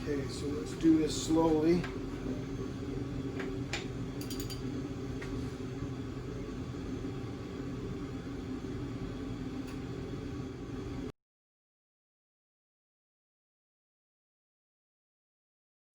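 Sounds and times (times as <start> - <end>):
low mechanical hum: 0.0 - 11.1.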